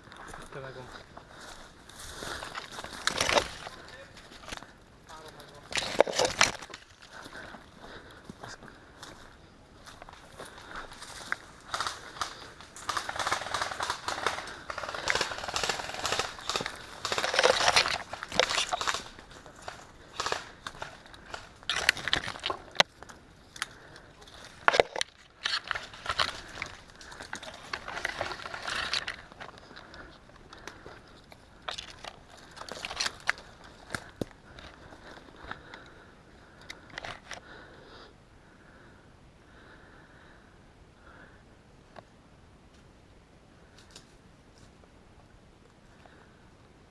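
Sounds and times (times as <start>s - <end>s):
low steady background noise: 0.0s - 46.9s
clicks crunches and knocks: 2.5s - 7.2s, 10.9s - 35.9s, 36.6s - 37.4s.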